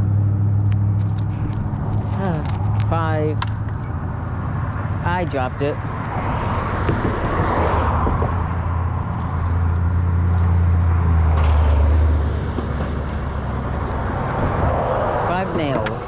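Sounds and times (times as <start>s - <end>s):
tyre road noise: 0.0s - 16.0s
vehicle engine humming: 0.0s - 16.0s.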